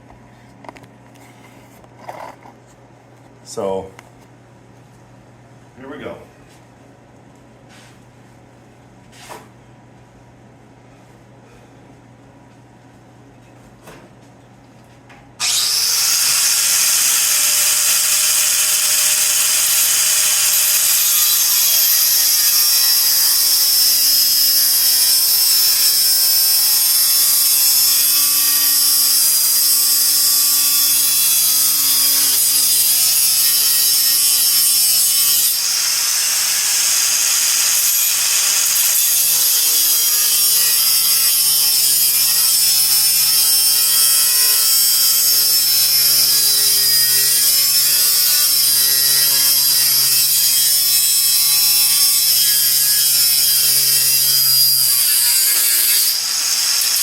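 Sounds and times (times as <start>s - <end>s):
grinder hissing through steel: 15.4s - 57.0s
grinder motor whine: 15.4s - 57.0s.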